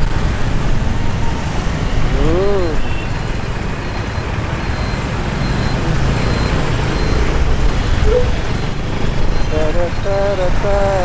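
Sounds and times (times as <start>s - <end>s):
traffic engines rumbling: 0.0s - 11.0s
short tone: 8.0s - 8.5s.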